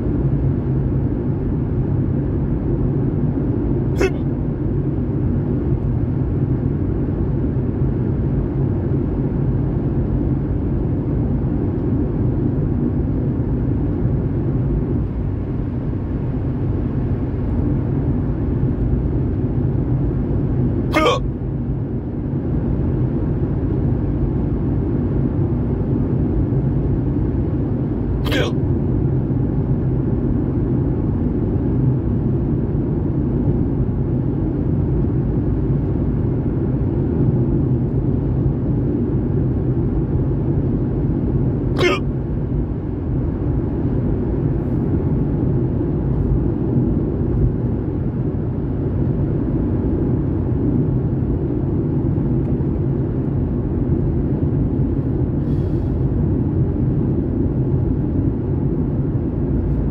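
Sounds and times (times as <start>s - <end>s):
car road and engine rumble: 0.0s - 59.9s
person hiccuping: 4.0s - 4.3s, 20.9s - 21.3s, 28.2s - 28.6s, 41.8s - 42.1s.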